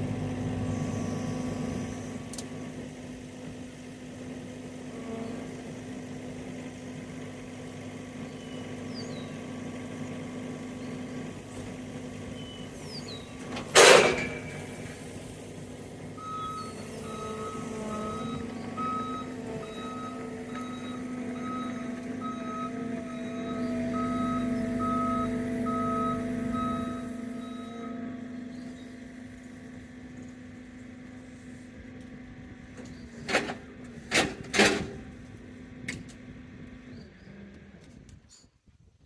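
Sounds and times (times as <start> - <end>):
vehicle engine running: 0.0 - 38.2
backup alarm beeping: 16.2 - 28.1.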